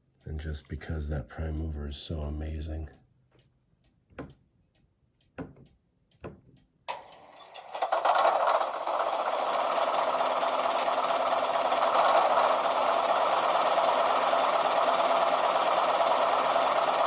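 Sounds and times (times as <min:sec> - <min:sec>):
diesel engine sound from small speaker: 0:07.4 - 0:17.0.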